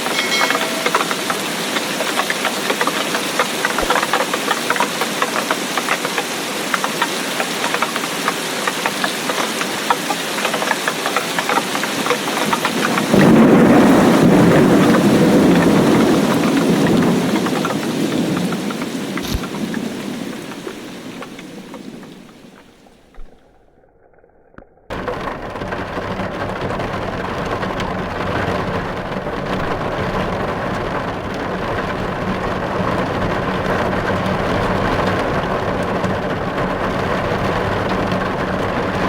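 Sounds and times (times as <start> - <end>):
heavy rain falling: 0.0 - 23.4, 24.9 - 39.0
thunderclap rumbling: 11.1 - 23.8, 24.9 - 39.0.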